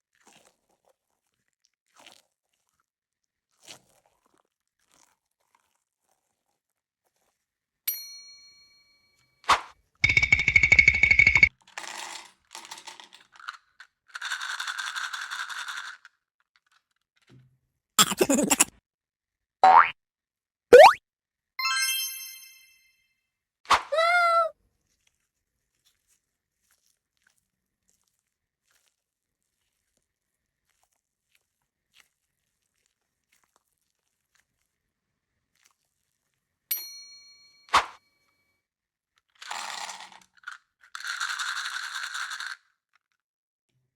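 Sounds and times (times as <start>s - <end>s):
rapid clicking and rattling: 10.0s - 11.5s.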